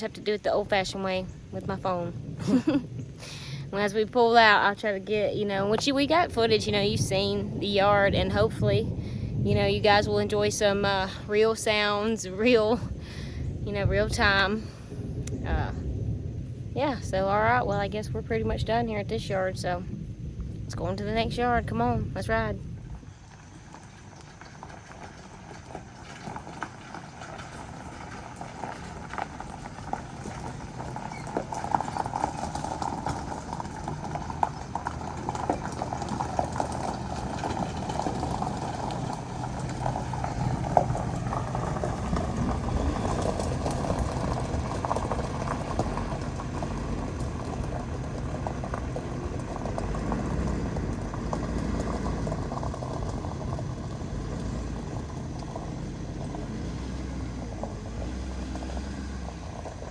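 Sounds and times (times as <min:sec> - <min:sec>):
truck engine hum: 0:00.0 - 0:59.9
rattling and knocking clatter: 0:23.2 - 0:59.9.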